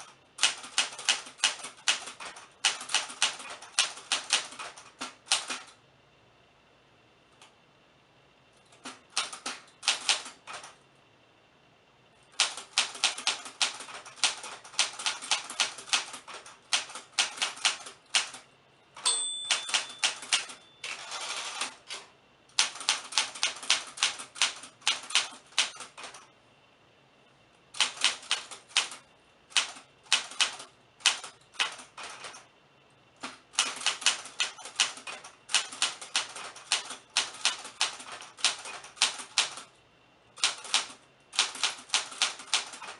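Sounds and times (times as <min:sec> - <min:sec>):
typewriter keys striking: 0:00.0 - 0:05.7, 0:08.7 - 0:10.8, 0:12.4 - 0:18.4, 0:19.0 - 0:26.2, 0:27.8 - 0:32.4, 0:33.2 - 0:39.7, 0:40.4 - 0:42.9
typewriter bell ringing: 0:19.0 - 0:21.6.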